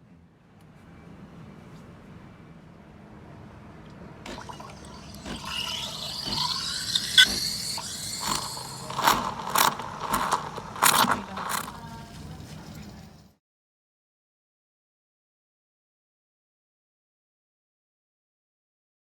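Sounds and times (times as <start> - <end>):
steady low hum: 3.5 - 13.2
espresso machine hissing: 4.3 - 12.4
sputtering bursts: 4.3 - 13.1.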